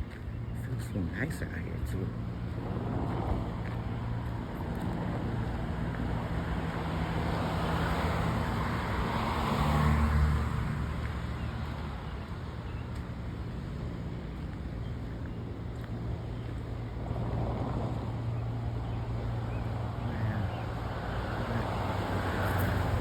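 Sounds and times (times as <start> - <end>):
car passing by: 4.4 - 12.1, 17.0 - 23.0.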